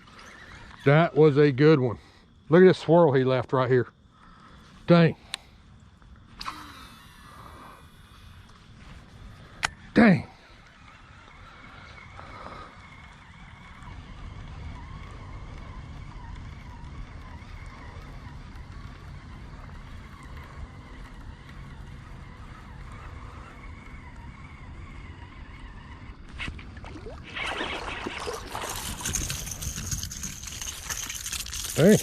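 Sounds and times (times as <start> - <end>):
wind buffeting microphone: 12.9 - 32.0
rustling splashy noise: 26.5 - 31.8.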